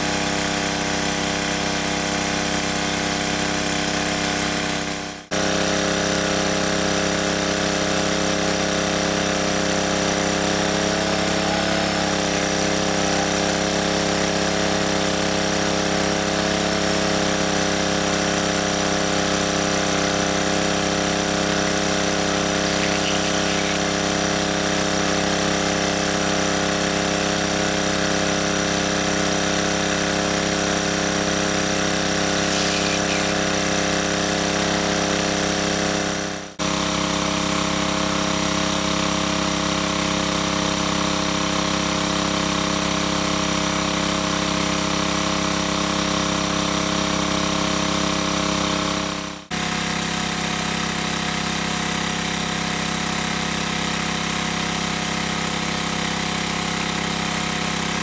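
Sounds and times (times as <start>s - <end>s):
steady machine drone: 8.4s - 27.8s, 31.8s - 36.6s.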